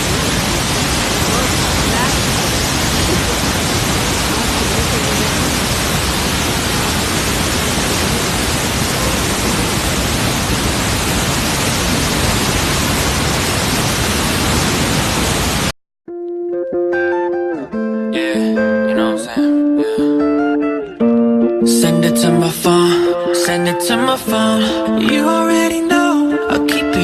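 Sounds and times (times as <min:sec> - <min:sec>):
loud steady rushing noise: 0:00.0 - 0:15.7.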